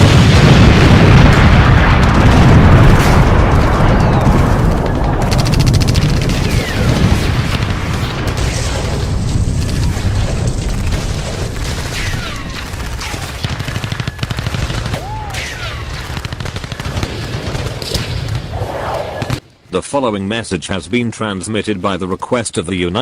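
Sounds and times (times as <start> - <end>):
rapid machine-gun fire: 0.0 - 18.2
rumble of explosions: 0.0 - 23.0.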